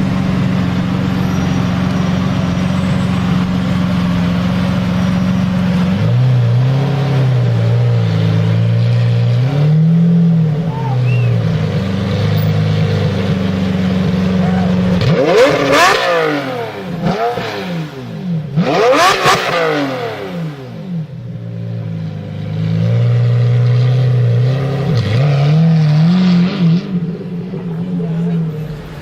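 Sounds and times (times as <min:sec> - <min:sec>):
sports car engine revving: 0:00.0 - 0:29.0.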